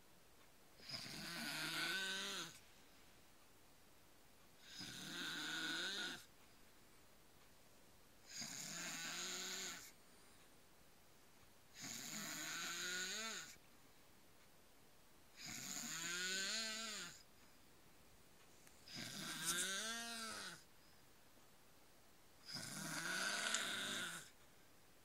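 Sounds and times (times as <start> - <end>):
man snoring loudly: 0.8 - 2.6, 4.6 - 6.2, 8.3 - 9.9, 11.8 - 13.6, 15.4 - 17.2, 18.9 - 20.6, 22.4 - 24.3.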